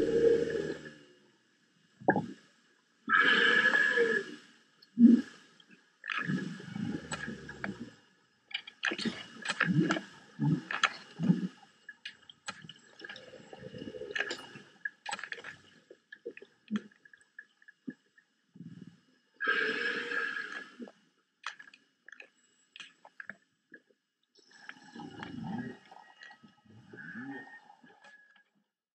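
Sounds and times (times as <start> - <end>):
underwater groaning swells: 0.0 - 1.2, 24.8 - 28.3
gurgling water: 2.0 - 2.4, 6.0 - 28.4.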